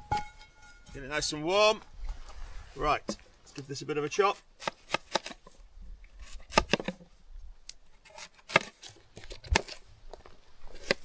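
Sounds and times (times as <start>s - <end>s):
knife chopping fruit on wood: 4.4s - 5.5s, 6.2s - 7.1s, 8.0s - 9.8s, 10.7s - 11.0s.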